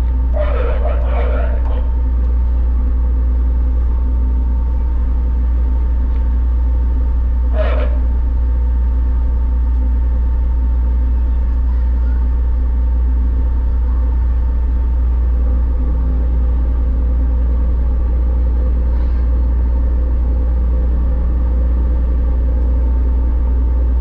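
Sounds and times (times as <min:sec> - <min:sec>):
steady tones: 0:00.0 - 0:02.1
ship engines droning: 0:00.0 - 0:24.0.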